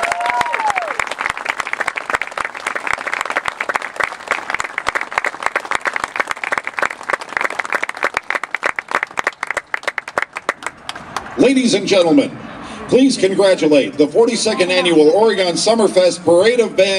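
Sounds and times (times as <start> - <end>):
crowd applauding: 0.0 - 11.3.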